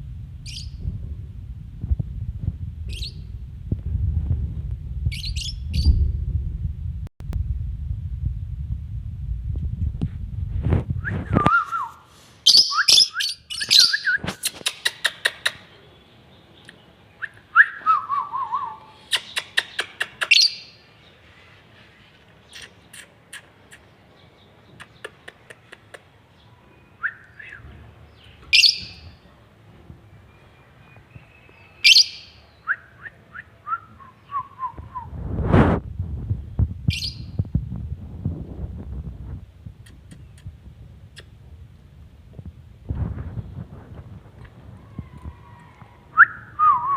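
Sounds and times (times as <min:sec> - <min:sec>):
low rumble: 0:00.0 - 0:11.9, 0:34.6 - 0:46.9.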